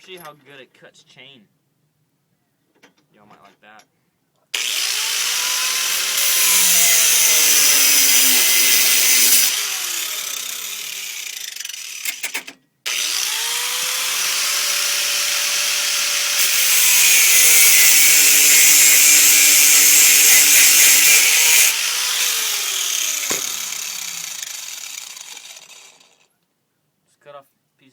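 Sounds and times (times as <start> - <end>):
angle grinder whining: 4.6 - 26.3
grinder cutting steel chain: 4.6 - 26.3.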